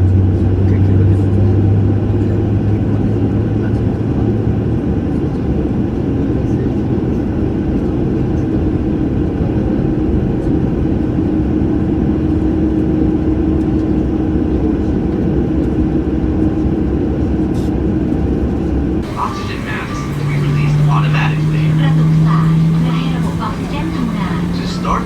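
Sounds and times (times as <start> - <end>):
jet engines rumbling: 19.0 - 25.0.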